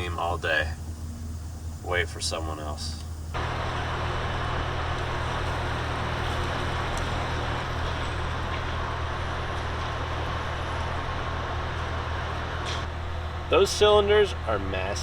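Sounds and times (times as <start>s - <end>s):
diesel truck engine idling: 0.0s - 15.0s.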